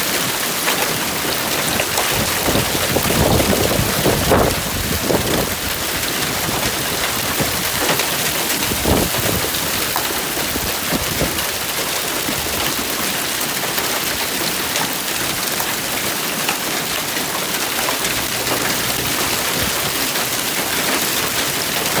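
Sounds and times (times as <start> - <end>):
hail clattering: 0.0 - 22.0.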